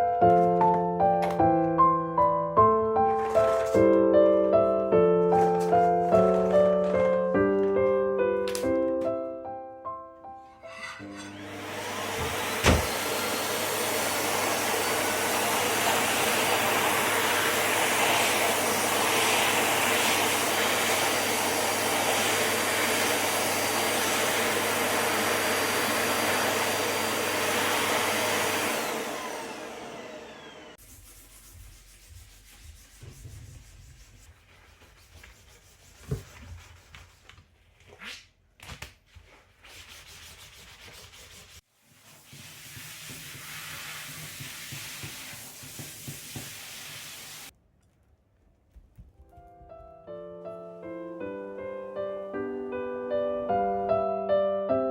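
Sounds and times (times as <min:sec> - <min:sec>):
rubbing and handling sounds: 0:03.0 - 0:04.1, 0:04.7 - 0:08.7, 0:30.8 - 0:49.2
vacuum cleaner running: 0:10.8 - 0:31.0, 0:42.0 - 0:47.5.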